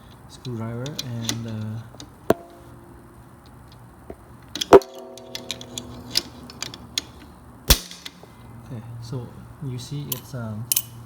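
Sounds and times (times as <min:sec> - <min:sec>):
metal tools clicking and knocking: 0:00.4 - 0:02.8, 0:04.5 - 0:08.2, 0:10.1 - 0:11.0.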